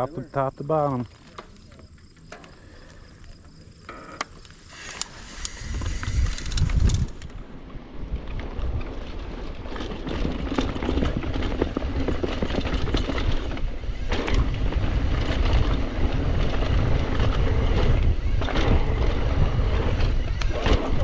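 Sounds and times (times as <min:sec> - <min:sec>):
bike tyre noise on trail: 0:00.0 - 0:21.0
wind buffeting microphone: 0:04.9 - 0:21.0
bike rattling knocks: 0:09.6 - 0:21.0.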